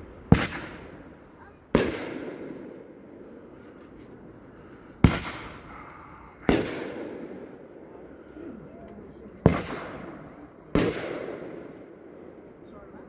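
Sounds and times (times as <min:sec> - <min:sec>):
firework bangs echoing: 0:00.0 - 0:03.6, 0:05.0 - 0:07.7, 0:09.4 - 0:12.2.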